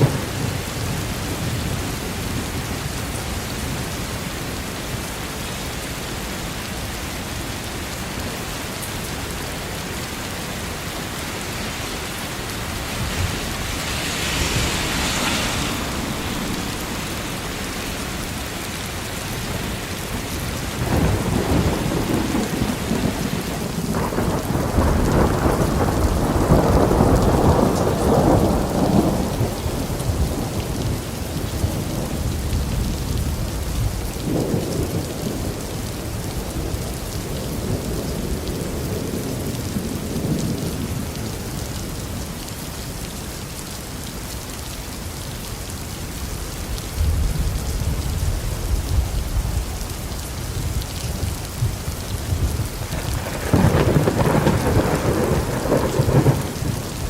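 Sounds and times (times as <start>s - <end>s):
steady rain: 0.0s - 57.0s
thunder rumbling: 11.0s - 36.8s, 46.9s - 57.0s.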